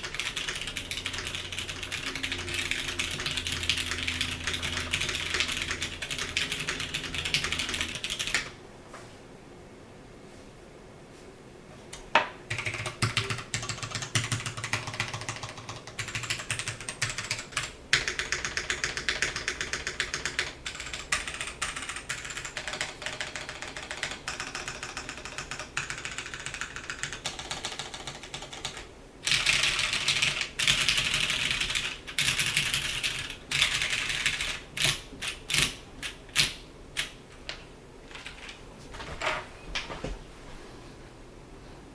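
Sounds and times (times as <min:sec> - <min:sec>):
mechanical keyboard typing: 0:00.0 - 0:08.6, 0:12.5 - 0:37.2.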